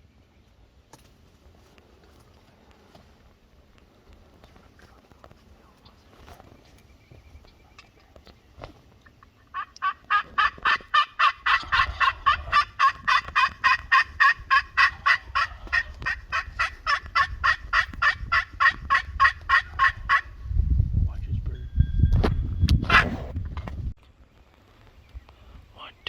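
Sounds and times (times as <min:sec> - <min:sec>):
turkey yelps: 0:09.4 - 0:20.3.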